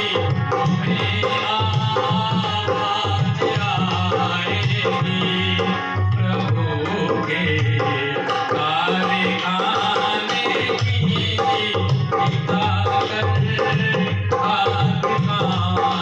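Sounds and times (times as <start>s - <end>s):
tabla rhythm: 0.0s - 16.0s.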